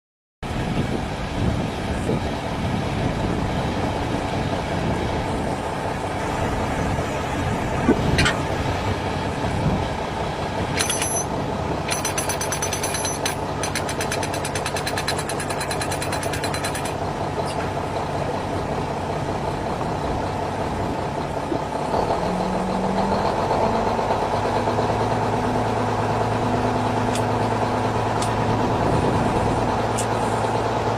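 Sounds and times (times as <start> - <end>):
diesel engine running: 0.4 - 30.9
fast rattling: 11.9 - 17.0.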